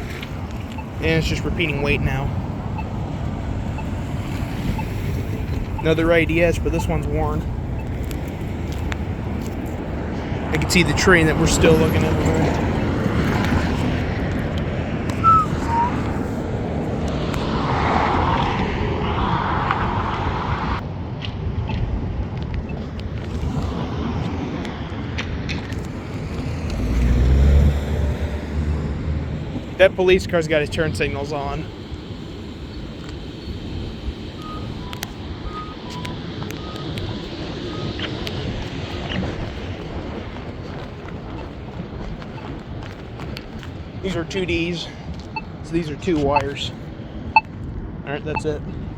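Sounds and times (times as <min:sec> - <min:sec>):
crosswalk signal two-tone beeps: 0:00.0 - 0:09.4, 0:15.2 - 0:16.1, 0:32.7 - 0:40.3, 0:41.3 - 0:41.7, 0:42.3 - 0:42.6, 0:45.2 - 0:45.6, 0:48.3 - 0:48.6
vehicle passing by: 0:00.0 - 0:20.8, 0:23.4 - 0:41.4
road traffic: 0:00.0 - 0:48.9
short high chirps: 0:15.2 - 0:16.0.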